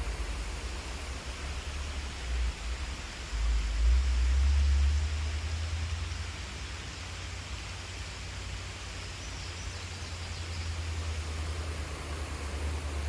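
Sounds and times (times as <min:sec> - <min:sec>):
creek water rushing: 0:00.0 - 0:04.3, 0:05.1 - 0:13.0
low rumble on microphone: 0:00.0 - 0:06.7.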